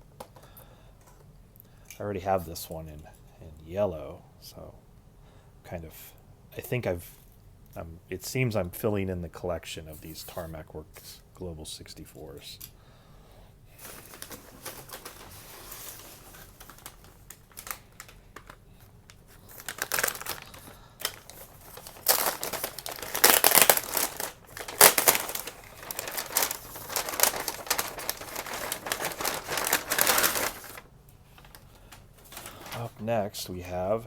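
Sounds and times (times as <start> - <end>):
packing material crinkling: 13.8 - 33.8.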